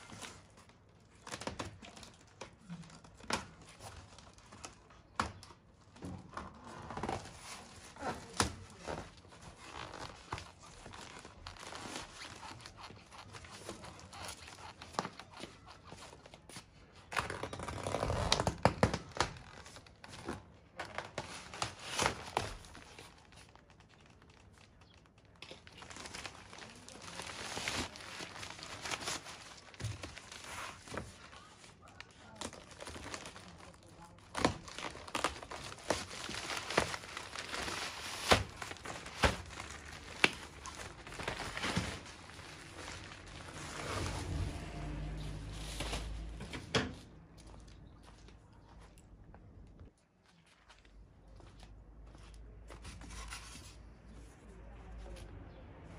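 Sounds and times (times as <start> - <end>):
packaging crinkling and ripping: 6.7 - 46.6.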